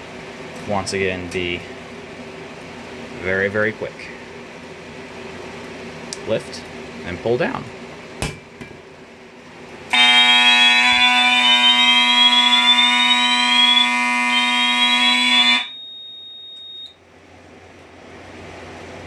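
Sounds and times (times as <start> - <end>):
fire alarm horn buzzing: 9.9 - 17.0
faint high steady tone: 10.0 - 17.0
high tone sweeping upward: 10.9 - 15.8.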